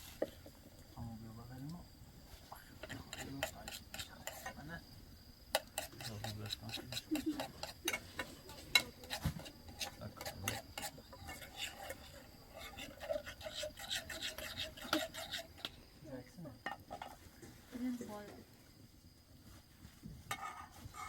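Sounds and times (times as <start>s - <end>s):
scraping and rubbing strokes: 2.8s - 4.6s, 5.5s - 15.8s.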